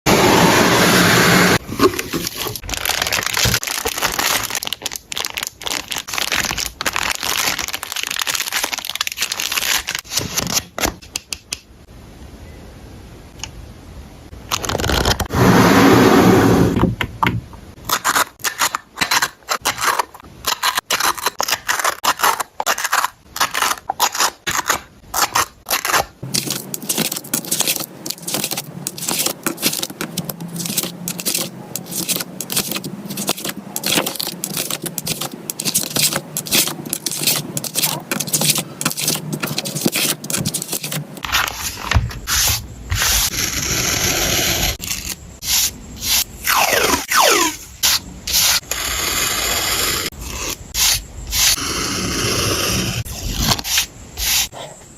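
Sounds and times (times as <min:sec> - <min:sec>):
paper scraping and rustling: 0:01.5 - 0:11.0, 0:17.9 - 0:46.9.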